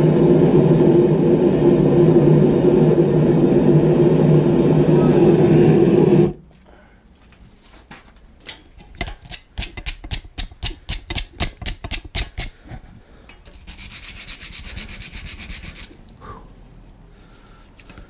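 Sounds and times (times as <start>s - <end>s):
steady hiss: 8.6s - 18.0s
rhythmic scraping strokes: 8.8s - 16.0s.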